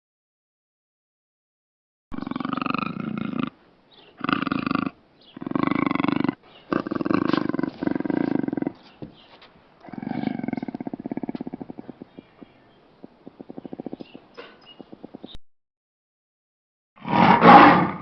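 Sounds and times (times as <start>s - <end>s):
big cat roaring and growling: 2.2s - 3.6s, 4.2s - 8.8s, 9.8s - 12.2s, 13.3s - 14.2s, 17.0s - 18.0s.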